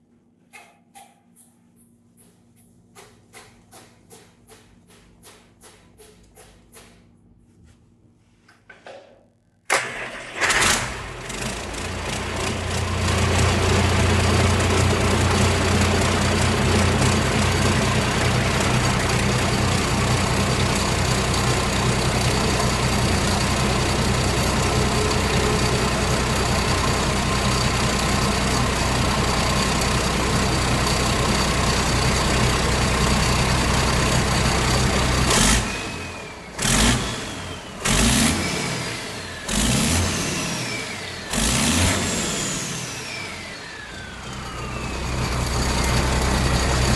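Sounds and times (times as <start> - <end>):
diesel engine cranking and running: 9.7 - 46.9.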